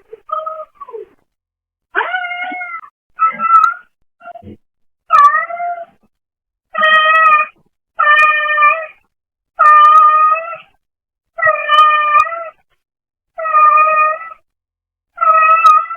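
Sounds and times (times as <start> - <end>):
cat meowing: 2.0 - 5.9, 6.8 - 9.0, 11.4 - 12.6, 13.4 - 14.4, 15.2 - 15.9.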